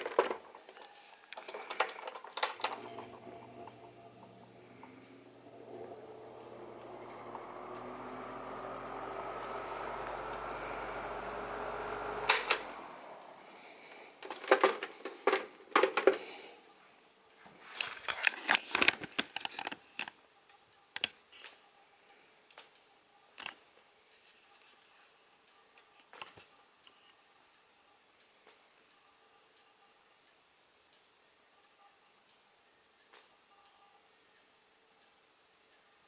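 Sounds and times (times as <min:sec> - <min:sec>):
table fan motor hum: 0:02.7 - 0:14.2.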